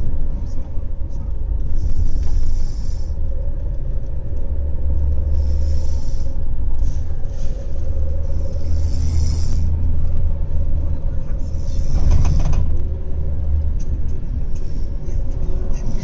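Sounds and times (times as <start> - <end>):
car cabin rumble: 0.0 - 16.0
person snoring: 8.3 - 9.8.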